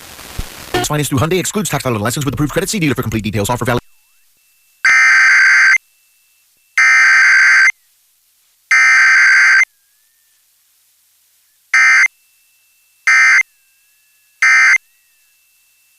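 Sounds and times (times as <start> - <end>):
buzzing digital data tones: 11.7 - 15.9.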